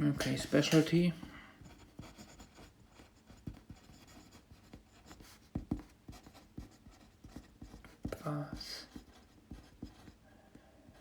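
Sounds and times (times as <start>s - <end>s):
pencil writing on paper: 1.6s - 10.2s.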